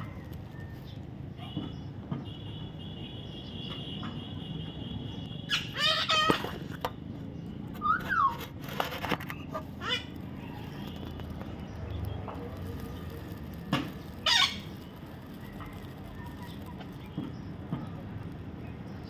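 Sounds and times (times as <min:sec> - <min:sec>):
parrot squawking: 0:05.4 - 0:06.7, 0:09.5 - 0:10.8, 0:14.2 - 0:14.8.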